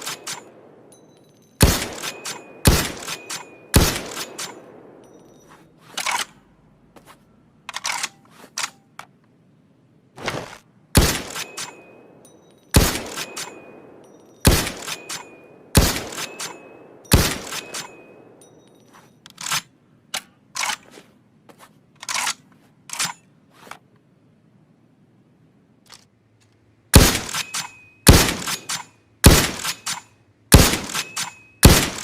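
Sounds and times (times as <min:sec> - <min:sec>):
rifle shots: 0:00.0 - 0:00.9, 0:01.6 - 0:05.2, 0:10.9 - 0:18.4, 0:26.9 - 0:32.0
metallic rifle bolt clicks: 0:00.0 - 0:06.6, 0:07.6 - 0:09.4, 0:11.0 - 0:20.9, 0:21.9 - 0:23.4, 0:25.8 - 0:32.0
faint ringing: 0:00.0 - 0:10.1, 0:10.7 - 0:20.4, 0:24.3 - 0:32.0.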